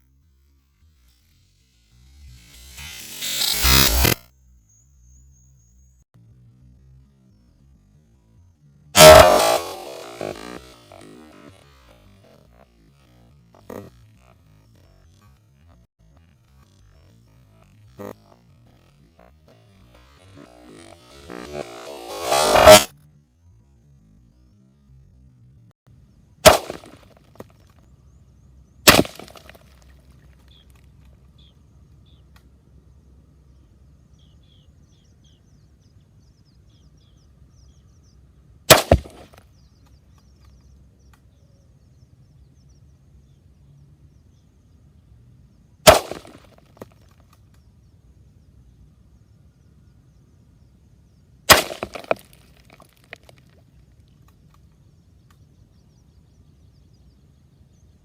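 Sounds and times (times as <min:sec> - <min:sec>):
rifle shots cracking: 0:26.4 - 0:27.1, 0:28.9 - 0:29.5, 0:38.7 - 0:39.4, 0:45.9 - 0:46.4, 0:51.5 - 0:52.2.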